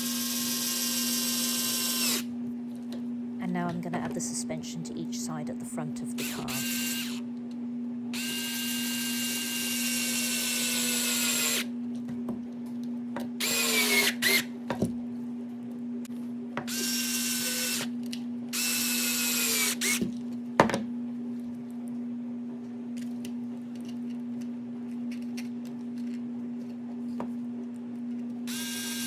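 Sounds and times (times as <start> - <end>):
electric screwdriver whirring: 0.0 - 2.3, 6.2 - 7.2, 8.2 - 11.7, 13.4 - 14.5, 16.7 - 17.9, 18.6 - 20.0, 28.5 - 29.0.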